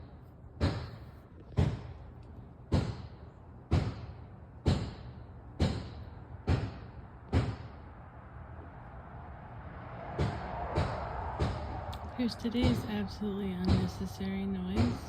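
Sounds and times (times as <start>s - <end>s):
loud sharp banging impacts: 0.0s - 2.0s, 2.7s - 7.9s, 10.0s - 13.0s.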